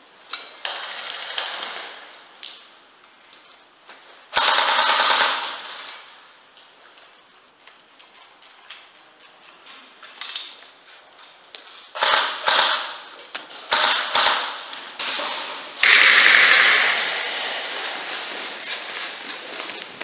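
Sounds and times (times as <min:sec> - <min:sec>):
airsoft guns firing: 0:04.3 - 0:06.0, 0:12.0 - 0:13.1, 0:13.7 - 0:17.5.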